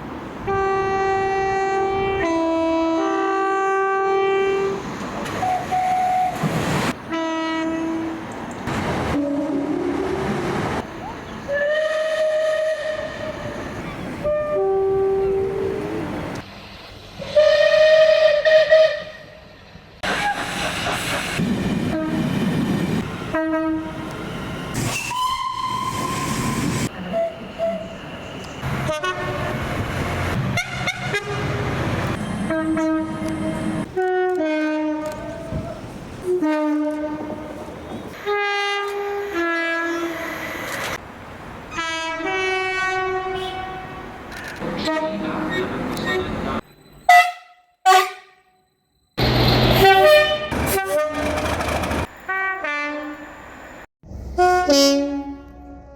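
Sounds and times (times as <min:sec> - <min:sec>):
single high train horn: 0:00.5 - 0:04.8, 0:07.1 - 0:08.3, 0:09.1 - 0:10.2, 0:11.5 - 0:16.0, 0:17.2 - 0:19.4, 0:21.9 - 0:22.4, 0:23.3 - 0:24.2, 0:28.8 - 0:29.6, 0:30.5 - 0:35.6, 0:36.2 - 0:40.2, 0:41.7 - 0:44.2, 0:44.8 - 0:45.3, 0:49.2 - 0:51.4, 0:52.3 - 0:53.4, 0:54.3 - 0:55.9
two-tone train horn blasts: 0:00.5 - 0:04.8, 0:07.1 - 0:08.2, 0:09.2 - 0:10.2, 0:11.5 - 0:13.6, 0:14.2 - 0:15.9, 0:17.2 - 0:19.4, 0:21.9 - 0:22.3, 0:23.3 - 0:24.2, 0:28.8 - 0:29.6, 0:30.5 - 0:31.7, 0:32.3 - 0:35.5, 0:36.2 - 0:40.2, 0:41.7 - 0:44.1, 0:47.1 - 0:48.6, 0:49.2 - 0:51.3, 0:52.3 - 0:53.3, 0:54.3 - 0:55.9
train running noise: 0:04.6 - 0:14.4, 0:15.3 - 0:41.7, 0:49.2 - 0:53.8.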